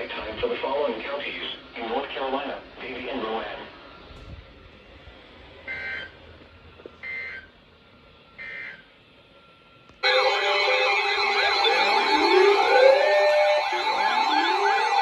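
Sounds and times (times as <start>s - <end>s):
warbling data bursts: 10.0s - 15.0s
wavering siren-like sound: 10.0s - 15.0s.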